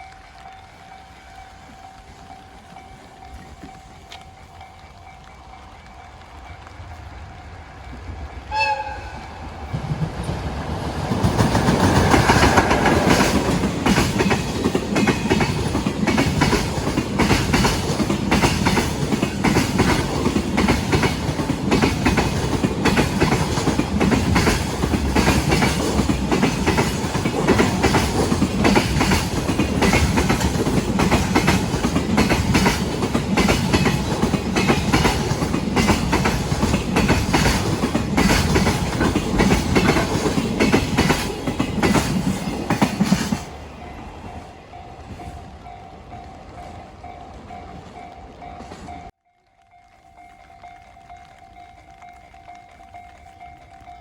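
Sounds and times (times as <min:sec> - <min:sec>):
train wheels clicking over rail joints: 0:07.8 - 0:49.1
locomotive horn blast: 0:08.5 - 0:09.5.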